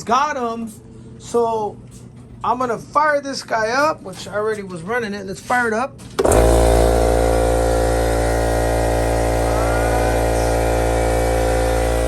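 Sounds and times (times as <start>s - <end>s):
air compressor running: 6.1s - 12.0s.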